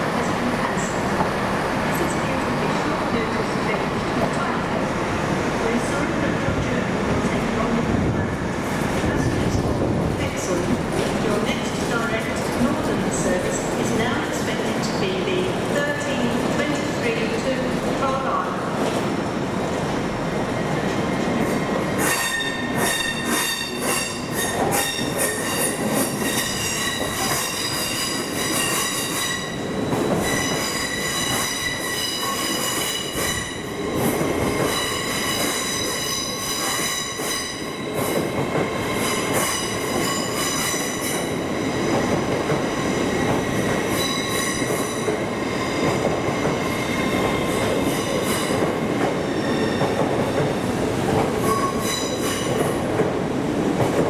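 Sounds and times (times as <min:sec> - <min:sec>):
train rumble: 0:00.0 - 0:54.0
high-pitched metallic train squeal: 0:22.0 - 0:33.7, 0:34.6 - 0:38.2, 0:51.4 - 0:52.5.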